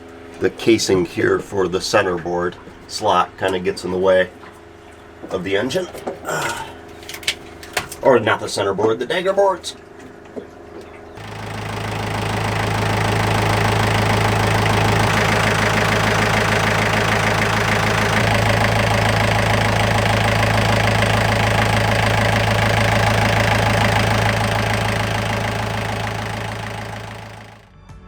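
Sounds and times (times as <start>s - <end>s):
boat engine humming: 11.2s - 27.6s.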